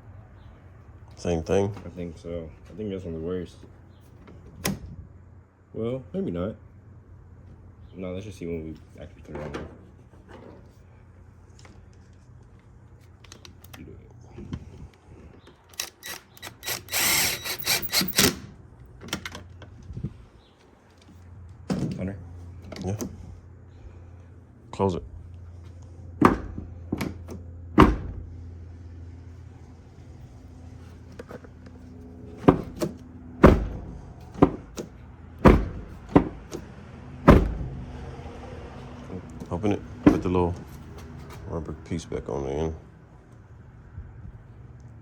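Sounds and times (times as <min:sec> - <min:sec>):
steady low hum: 0:00.0 - 0:45.0
car door latch clunks and clicks: 0:26.2 - 0:28.2, 0:32.4 - 0:36.7, 0:37.3 - 0:37.8.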